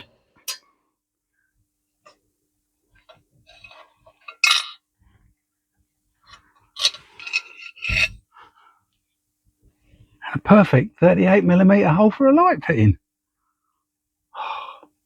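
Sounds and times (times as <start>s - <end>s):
candle holder clinking and scraping: 3.5s - 4.8s, 6.3s - 8.2s.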